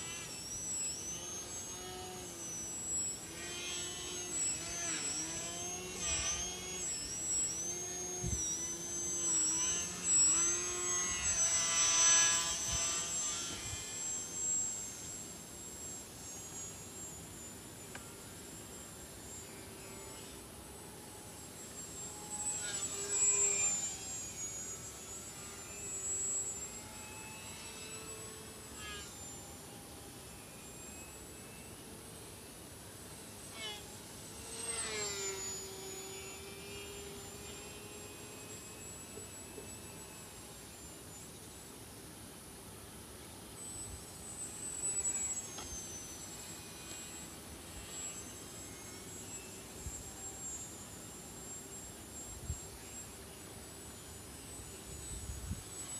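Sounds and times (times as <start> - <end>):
model plane motor whining: 0.0 - 55.9.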